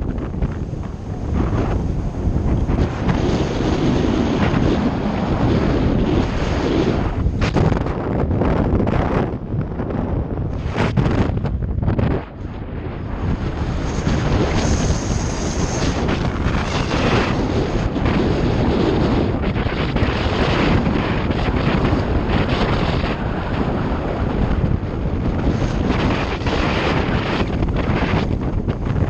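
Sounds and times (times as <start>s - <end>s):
wind buffeting microphone: 0.0s - 29.0s.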